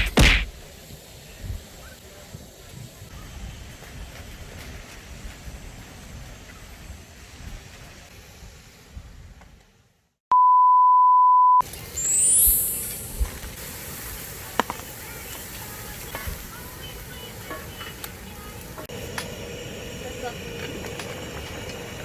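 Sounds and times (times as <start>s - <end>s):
pure-tone censor bleep: 10.3s - 13.3s.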